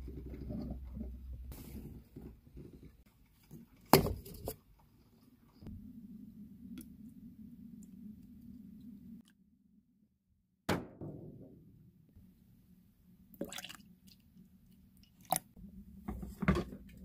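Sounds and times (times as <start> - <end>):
steady low hum: 5.6 - 9.2.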